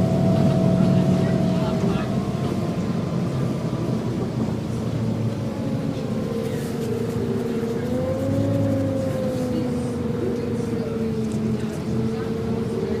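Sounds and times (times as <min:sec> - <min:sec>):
bus running with whine: 0:00.0 - 0:13.0.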